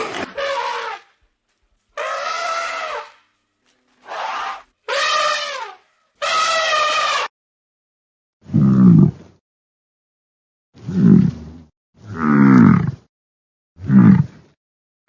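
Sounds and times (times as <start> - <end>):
low loud animal call: 0.0 - 1.1, 2.0 - 3.2, 3.8 - 7.3
high drawn-out animal calls: 0.0 - 1.2, 1.9 - 3.3, 4.0 - 7.3.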